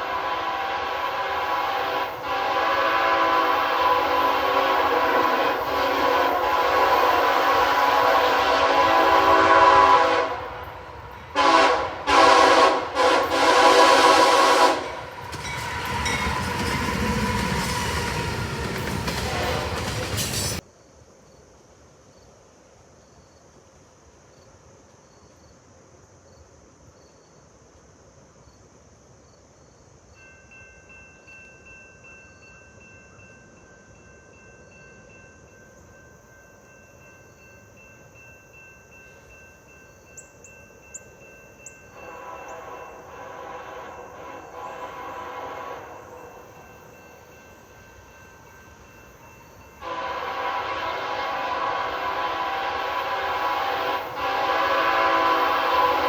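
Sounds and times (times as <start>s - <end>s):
locomotive air horn chord: 0.0s - 20.6s, 41.9s - 46.6s, 49.8s - 56.0s
passing train rumble: 0.0s - 20.6s, 30.2s - 56.0s.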